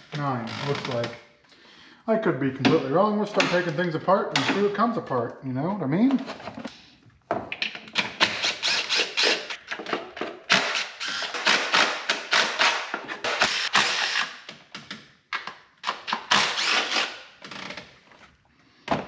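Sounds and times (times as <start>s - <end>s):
ratchet wrench clicking: 8.2s - 9.6s, 10.5s - 14.4s, 16.1s - 17.2s.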